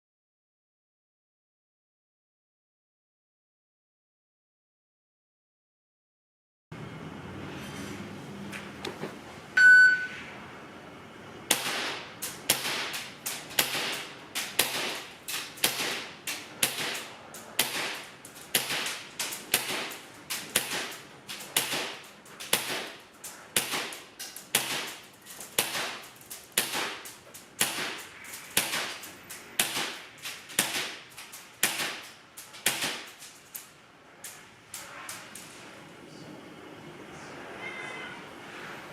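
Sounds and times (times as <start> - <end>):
short single beep: 9.6 - 10.2
airsoft gun shots: 11.5 - 20.0, 21.6 - 23.0, 23.6 - 25.0, 26.6 - 29.0, 29.6 - 30.0.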